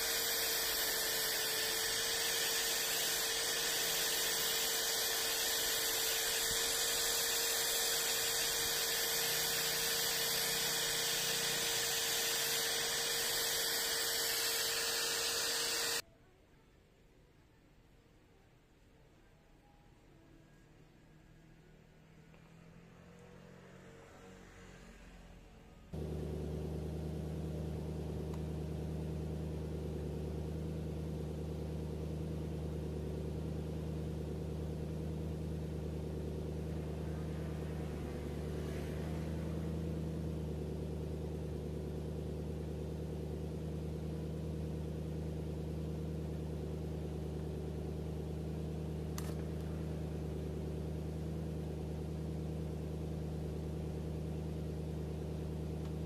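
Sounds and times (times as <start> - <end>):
woodworking machine motor running: 0.0 - 16.0, 26.0 - 31.0
sharp click: 49.2 - 49.5.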